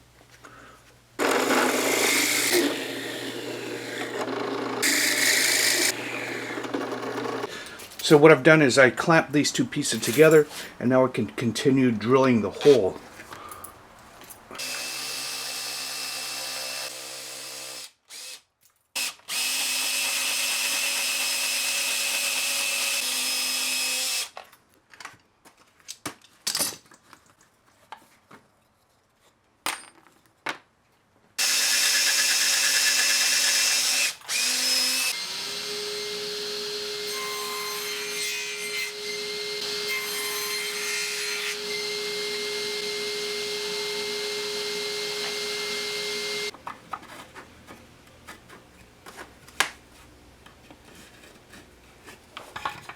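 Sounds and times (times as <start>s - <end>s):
drill press boring wood: 1.2s - 7.5s, 19.0s - 24.3s, 31.4s - 37.1s, 38.9s - 46.5s.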